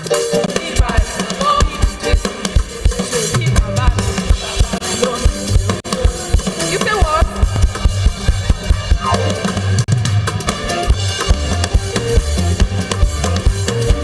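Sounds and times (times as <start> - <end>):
drum kit beat: 0.0 - 14.0
live band music: 0.0 - 14.0.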